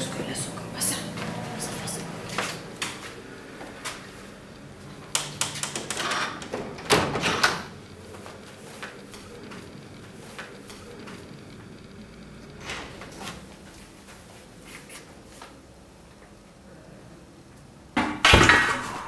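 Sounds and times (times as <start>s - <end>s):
doors and cupboards opening and shutting: 5.0s - 7.9s, 12.6s - 13.4s
loud door bangs: 18.0s - 19.0s.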